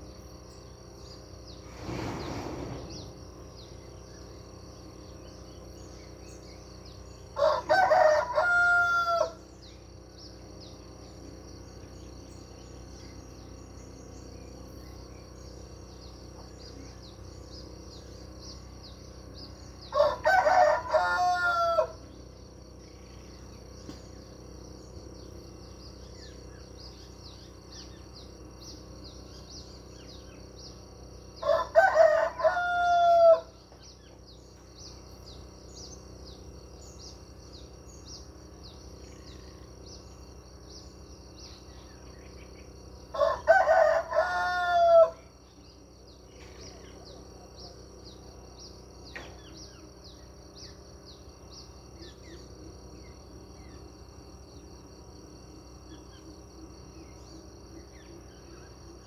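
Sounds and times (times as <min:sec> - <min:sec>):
high-pitched background buzz: 0:00.0 - 0:59.0
rooster crowing: 0:07.4 - 0:09.5, 0:19.9 - 0:22.1, 0:31.4 - 0:33.6, 0:43.1 - 0:45.4
small bird chirps: 0:45.4 - 0:55.0.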